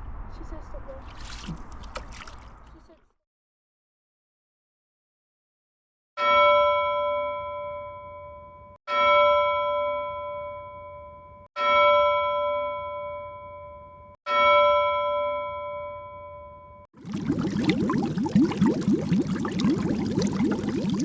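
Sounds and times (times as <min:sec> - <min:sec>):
bell-like chime: 0:06.2 - 0:16.8.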